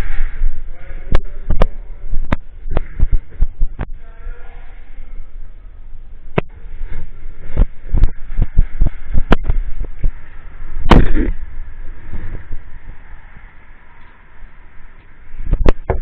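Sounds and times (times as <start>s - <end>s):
loud blast: 10.8s - 11.7s.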